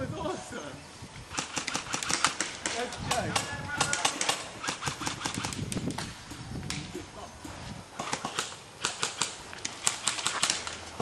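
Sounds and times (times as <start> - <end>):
airsoft pistol shots: 1.3 - 6.1.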